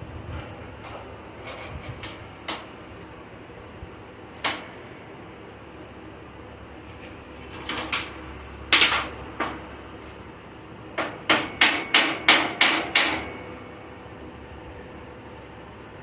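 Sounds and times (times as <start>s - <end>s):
hammer blows: 11.0s - 13.6s.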